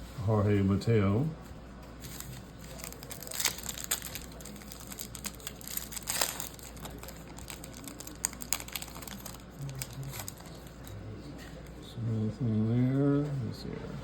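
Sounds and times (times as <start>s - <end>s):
card pack wrapper crinkling: 2.0s - 10.8s.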